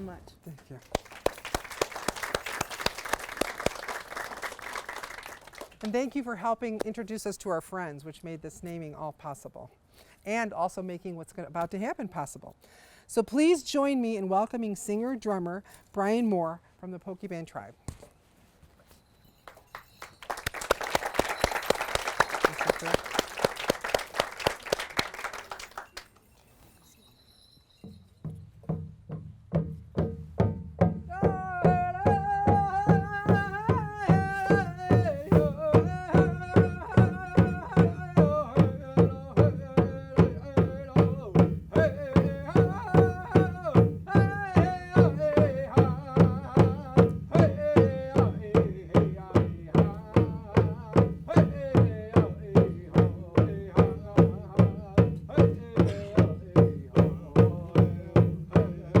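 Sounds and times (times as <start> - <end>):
steady drum beats: 20.4 - 25.8, 28.3 - 59.0
man singing: 31.1 - 59.0.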